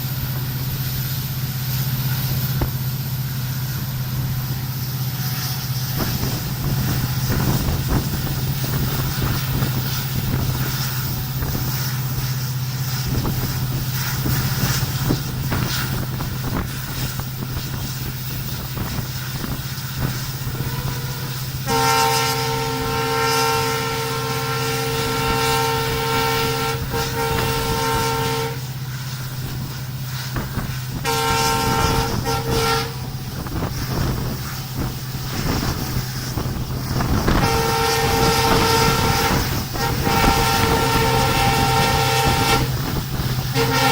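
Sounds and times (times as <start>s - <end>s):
diesel locomotive engine droning: 0.0s - 43.9s
locomotive horn blasts: 20.4s - 28.8s, 30.9s - 34.1s, 35.4s - 43.9s.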